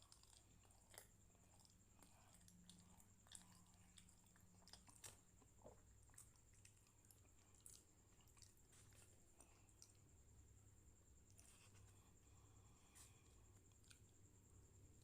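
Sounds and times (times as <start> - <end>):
wet mouth clicks chewing: 0.0 - 10.0
steady low hum: 0.0 - 15.0.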